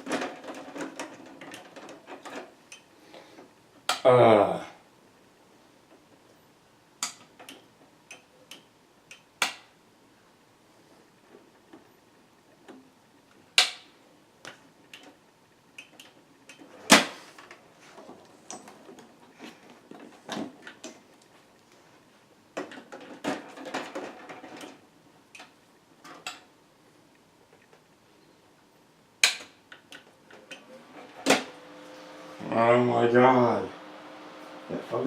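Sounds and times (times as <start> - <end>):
computer hardware clicks and knocks: 7.0 - 9.7, 29.2 - 30.6.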